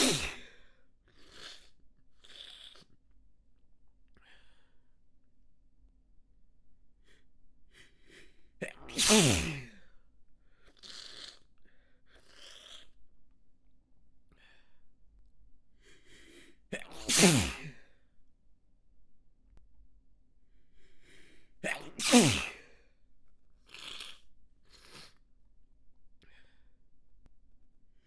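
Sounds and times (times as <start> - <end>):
person sneezing: 0.0 - 0.6, 8.6 - 9.9, 16.8 - 17.9, 21.6 - 22.8
sharp in-breaths: 0.0 - 0.6, 7.8 - 9.7, 15.9 - 17.7, 20.8 - 22.7.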